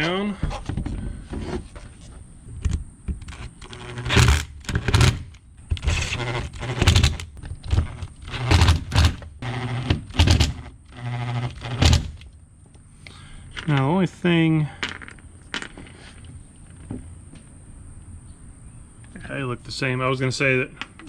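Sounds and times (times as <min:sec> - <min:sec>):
knocks and scrapes: 0:00.0 - 0:12.3
screws being tightened: 0:03.2 - 0:12.2.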